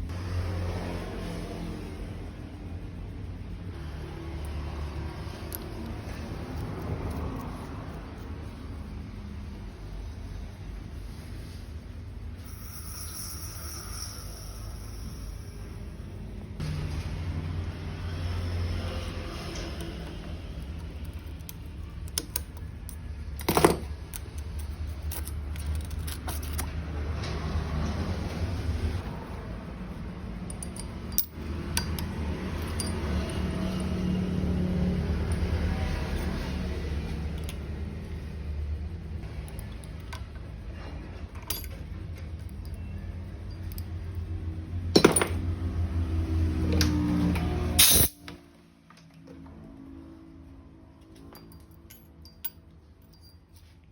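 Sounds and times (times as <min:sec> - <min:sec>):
metal tools clicking and clinking: 0:05.2 - 0:08.7, 0:19.4 - 0:27.3, 0:30.2 - 0:38.2, 0:39.2 - 0:45.5, 0:46.7 - 0:48.4, 0:51.0 - 0:53.9.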